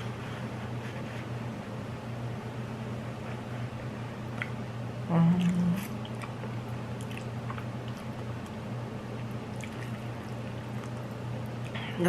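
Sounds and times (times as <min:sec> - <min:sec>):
steady low hum: 0:00.0 - 0:12.0
short hummed voice: 0:05.0 - 0:06.0
person chewing noodles: 0:05.4 - 0:08.6, 0:09.2 - 0:11.8.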